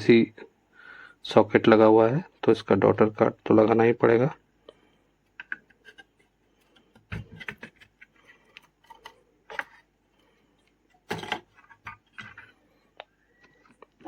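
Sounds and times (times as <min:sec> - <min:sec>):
clicks and knocks of laptop parts: 0:05.4 - 0:06.2, 0:06.8 - 0:09.8.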